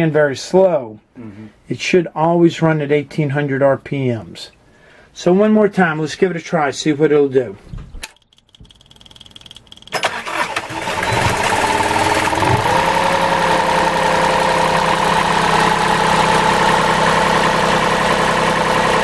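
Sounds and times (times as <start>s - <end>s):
diesel generator starting and running: 9.8s - 19.0s.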